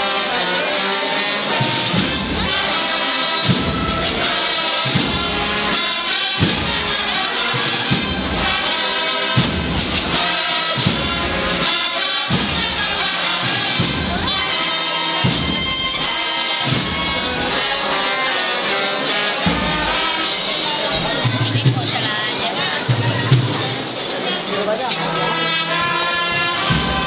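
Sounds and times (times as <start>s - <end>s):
brass band playing a march: 0.0s - 27.0s
deep drum beat: 1.6s - 2.8s, 3.4s - 8.7s, 9.4s - 11.7s, 12.3s - 17.9s, 19.4s - 24.2s, 25.8s - 27.0s.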